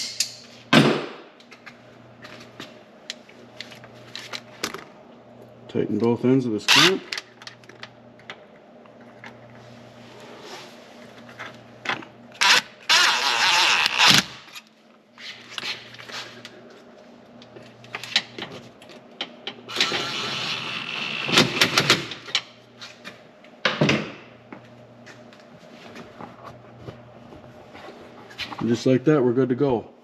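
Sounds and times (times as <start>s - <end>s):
power driver running: 3.1s - 10.3s, 11.2s - 14.7s, 19.2s - 22.5s.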